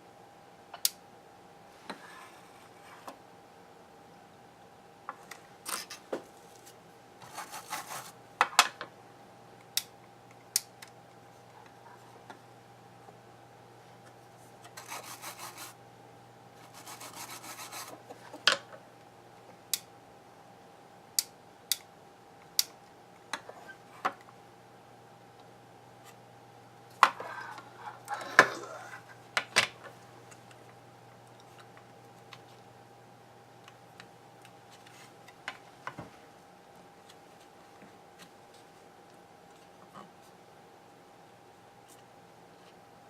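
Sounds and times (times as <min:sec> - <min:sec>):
faint steady hum: 0:00.0 - 0:43.0
scraping or rubbing: 0:05.7 - 0:08.2, 0:14.8 - 0:15.8, 0:16.6 - 0:18.0.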